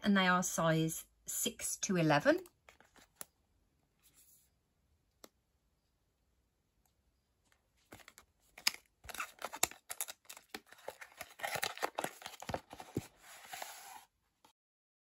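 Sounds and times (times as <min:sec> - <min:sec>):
packaging rustling and crinkling: 0:07.8 - 0:14.1.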